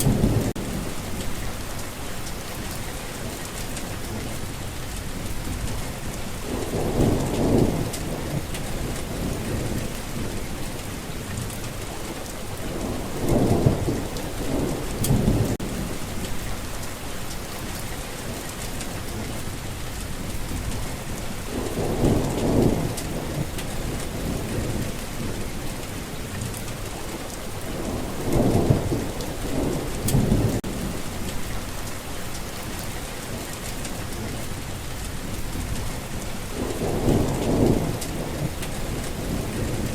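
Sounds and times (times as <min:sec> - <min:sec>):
thunder rolling: 0:00.0 - 0:01.8, 0:05.2 - 0:10.6, 0:12.6 - 0:16.8, 0:20.2 - 0:25.6, 0:27.7 - 0:31.8, 0:35.2 - 0:39.9
rain hissing: 0:00.0 - 0:39.9.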